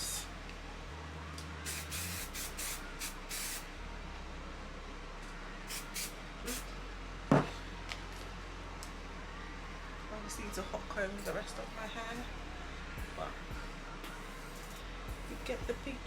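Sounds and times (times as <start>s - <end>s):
hairspray hissing bursts: 1.6s - 3.7s, 5.7s - 6.7s.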